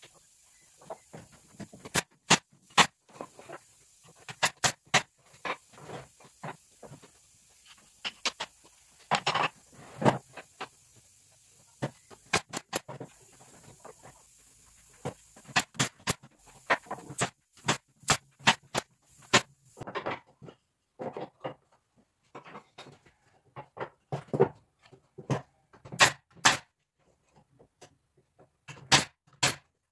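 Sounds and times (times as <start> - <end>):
wooden pieces clicking and knocking: 8.0 - 10.7.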